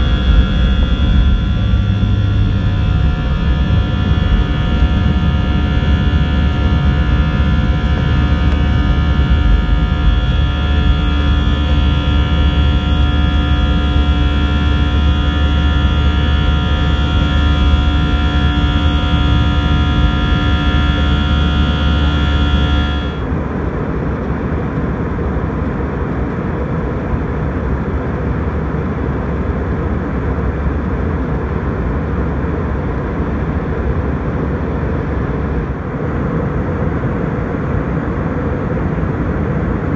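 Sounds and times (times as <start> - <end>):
rushing cabin noise: 0.0 - 23.3
jet engines humming in cabin: 0.0 - 39.9.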